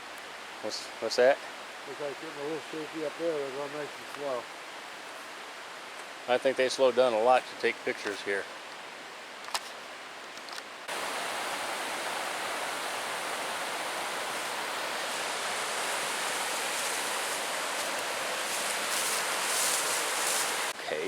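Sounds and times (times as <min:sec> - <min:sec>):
stream water rushing over rocks: 0:10.0 - 0:21.0.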